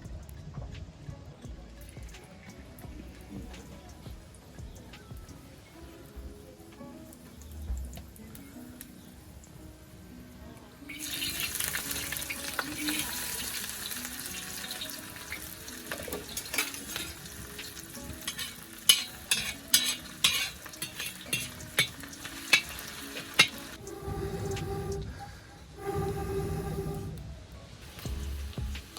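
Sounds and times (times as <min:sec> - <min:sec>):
faint background music: 0:00.0 - 0:28.9
fish sizzling in hot oil: 0:02.2 - 0:23.8
metal spatula scraping pan: 0:15.9 - 0:17.5, 0:18.1 - 0:25.0.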